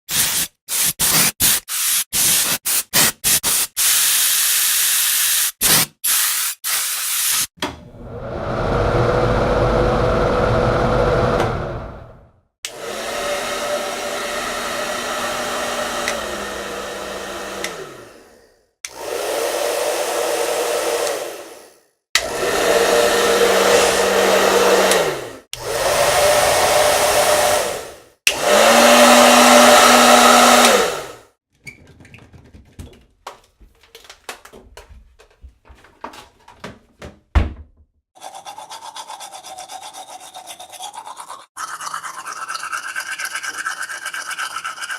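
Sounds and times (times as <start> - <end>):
hair dryer blowing: 7.9 - 31.3
toothbrush scrubbing: 38.2 - 44.9.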